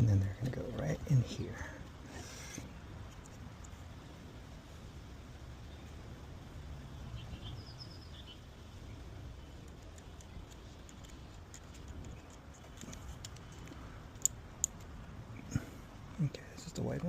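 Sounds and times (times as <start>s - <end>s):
faint small clicks: 9.6s - 15.0s.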